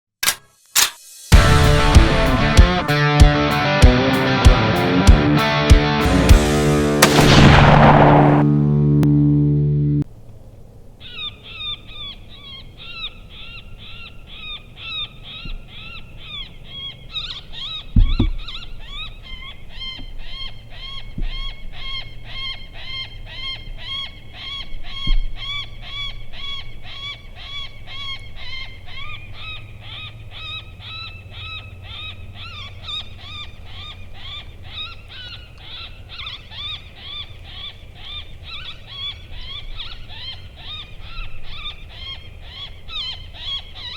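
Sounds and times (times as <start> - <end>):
sharp thump: 7.0 - 8.6.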